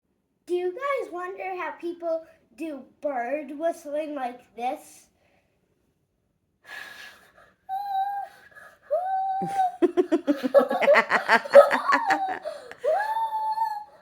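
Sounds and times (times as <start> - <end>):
person laughing: 9.4 - 13.0.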